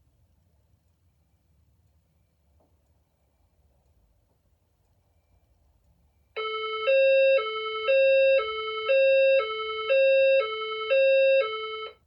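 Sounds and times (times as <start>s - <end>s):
fire alarm alternating tone: 6.4s - 12.0s.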